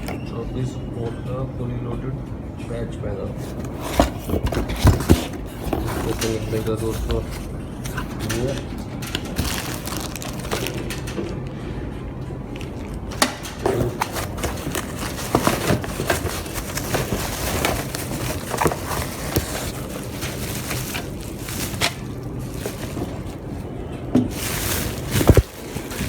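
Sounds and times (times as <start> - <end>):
handling clicks and knocks: 0.0 - 0.4, 3.4 - 11.4, 12.6 - 26.0
steady background hum: 0.0 - 26.0.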